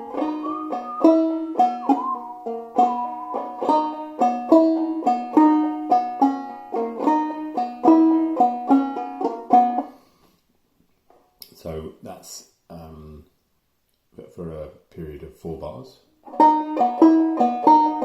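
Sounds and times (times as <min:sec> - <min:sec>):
banjo playing a jig: 0:00.0 - 0:10.1, 0:16.2 - 0:18.0.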